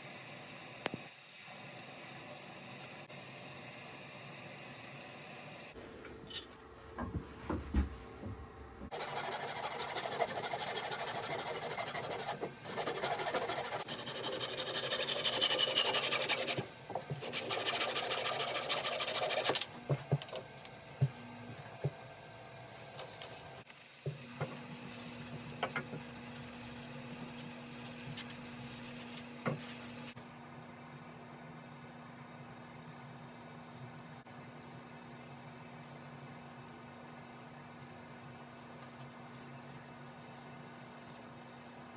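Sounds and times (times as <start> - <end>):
wood being rasped: 8.9 - 19.6.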